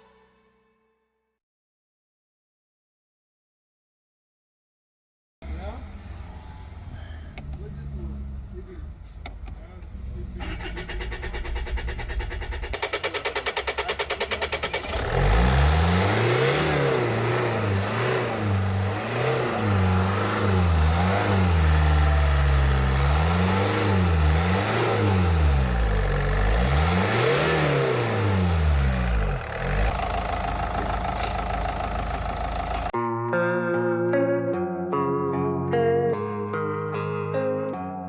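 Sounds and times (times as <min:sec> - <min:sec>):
diesel engine revving and idling: 0:05.4 - 0:32.9
engine starter cranking: 0:09.1 - 0:32.9.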